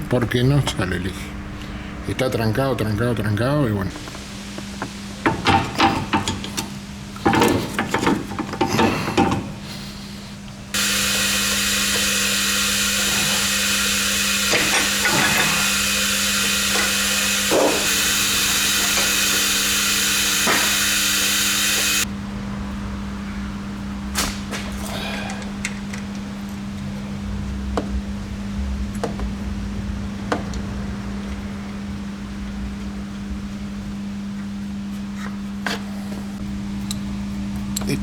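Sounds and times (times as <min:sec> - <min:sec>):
loud steady hiss: 0:10.7 - 0:22.1.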